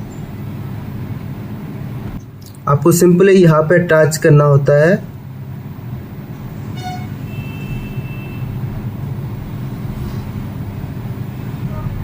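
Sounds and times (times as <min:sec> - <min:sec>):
road traffic rumble: 0:00.0 - 0:12.0
high steady beep: 0:06.8 - 0:08.5
car horn toot: 0:06.8 - 0:08.6.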